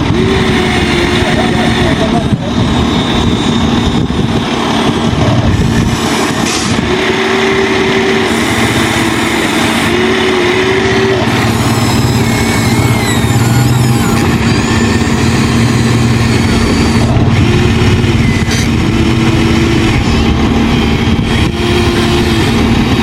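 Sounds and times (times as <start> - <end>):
short rising and falling whines: 0.0 - 23.0
toy motor hum: 8.1 - 22.8.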